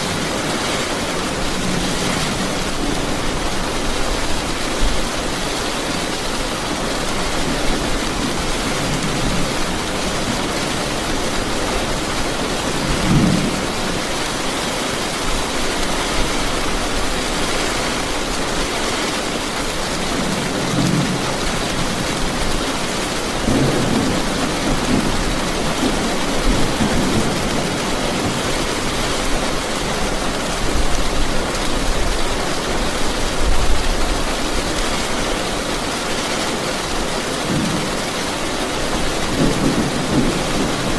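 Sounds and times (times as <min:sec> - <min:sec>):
heavy rain falling: 0:00.0 - 0:40.9
thunder rumbling: 0:19.9 - 0:31.2, 0:37.4 - 0:40.9.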